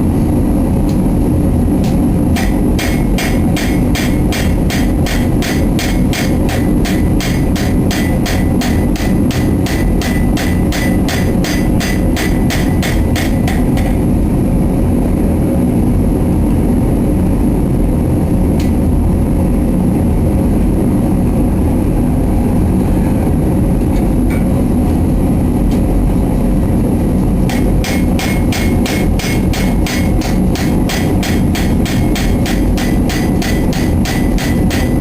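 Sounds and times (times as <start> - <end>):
hammer blows on hot steel: 1.8 - 14.1, 27.4 - 35.0
forge roaring: 19.0 - 35.0.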